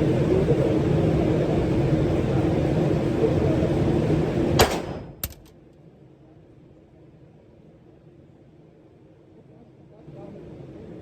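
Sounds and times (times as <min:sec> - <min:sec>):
pistol shots: 0:04.6 - 0:05.5.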